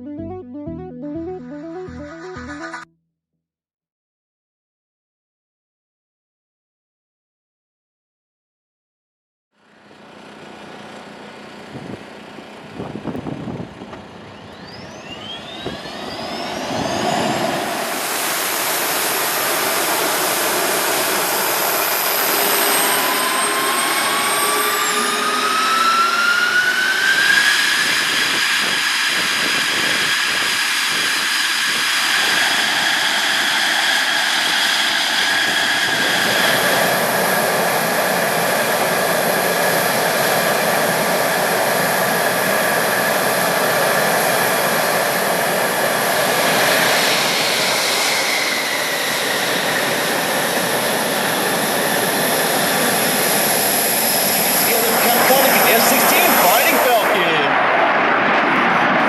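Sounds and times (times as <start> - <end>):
jet engine spooling up: 14.3 - 59.0.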